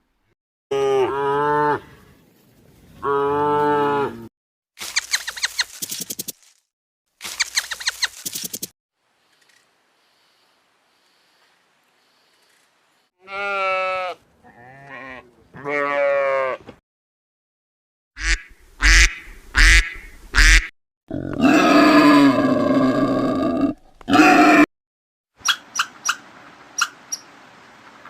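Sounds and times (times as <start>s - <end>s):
loud animal grunts: 21.1s - 24.7s.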